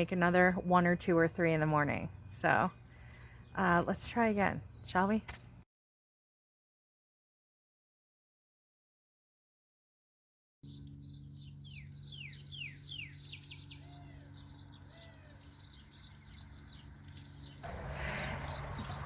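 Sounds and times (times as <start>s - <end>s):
birds chirping: 0.0s - 5.6s, 10.6s - 19.0s
downward-sweeping bird calls: 10.7s - 19.0s
steady low hum: 10.7s - 19.0s.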